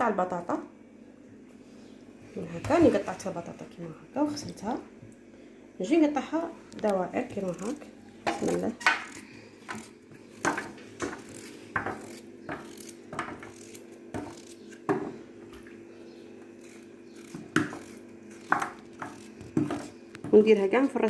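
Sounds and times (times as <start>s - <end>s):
knife slicing potatoes: 8.4s - 14.9s, 16.5s - 21.0s.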